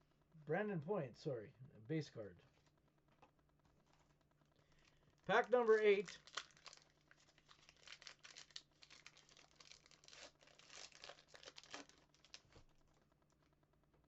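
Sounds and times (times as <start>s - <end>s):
wrapper tearing and crinkling: 5.3s - 12.8s.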